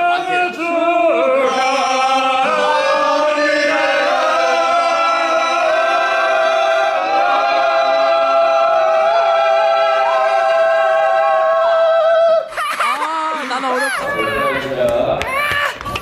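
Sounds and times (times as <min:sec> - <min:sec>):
voices singing a held note: 0:00.0 - 0:12.4.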